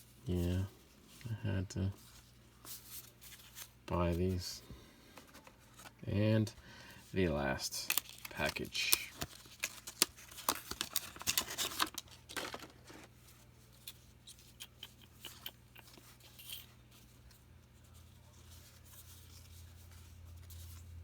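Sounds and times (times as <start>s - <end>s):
wrapper tearing and crinkling: 7.8s - 13.0s.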